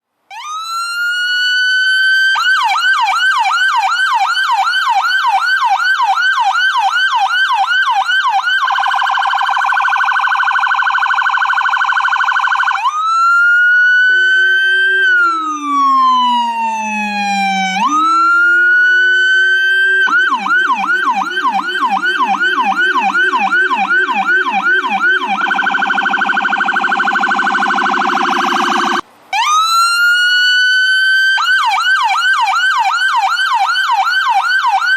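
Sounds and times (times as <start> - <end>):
electronic ambulance siren: 0.3 - 34.9.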